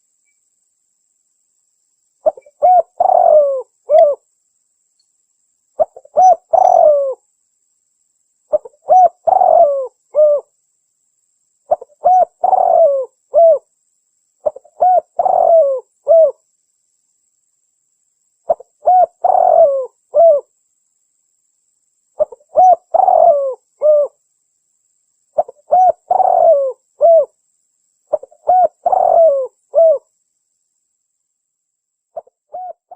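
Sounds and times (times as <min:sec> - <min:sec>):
dove cooing: 0:02.2 - 0:04.2, 0:05.8 - 0:07.2, 0:08.5 - 0:10.5, 0:11.7 - 0:13.7, 0:14.4 - 0:16.4, 0:18.5 - 0:20.5, 0:22.2 - 0:24.2, 0:25.4 - 0:27.4, 0:28.1 - 0:30.1, 0:32.2 - 0:32.9.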